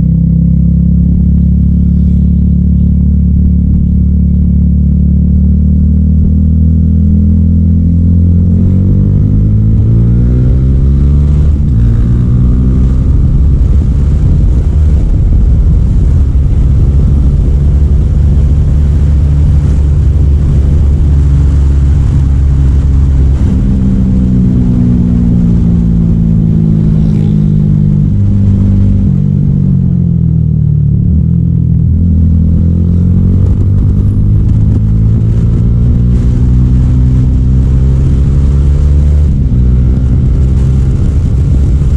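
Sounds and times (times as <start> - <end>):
motorcycle engine riding: 0.0 - 41.9.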